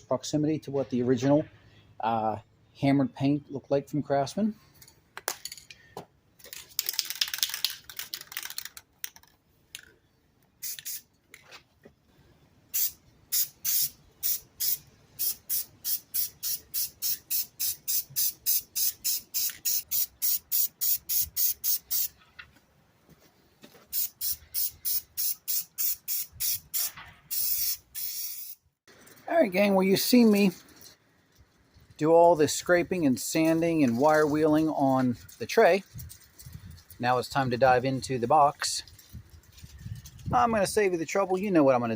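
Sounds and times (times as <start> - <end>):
spray paint can hissing bursts: 10.6 - 11.1, 12.7 - 22.2, 23.9 - 28.7.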